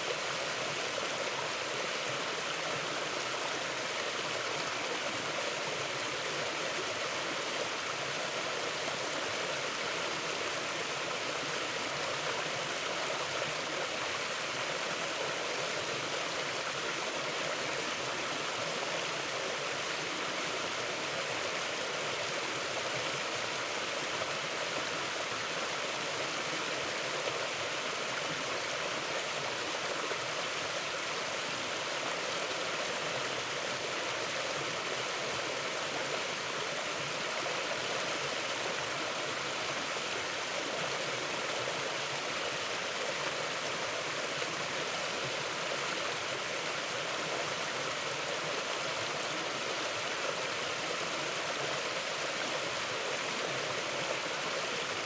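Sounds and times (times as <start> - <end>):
river water rushing over rocks: 0.0 - 55.0.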